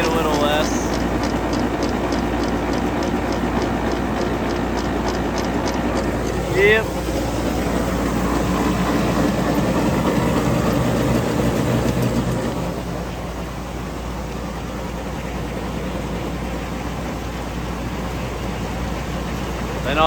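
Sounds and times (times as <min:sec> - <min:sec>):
auger unloading feed: 0:00.0 - 0:13.1
tractor engine running: 0:00.0 - 0:20.0.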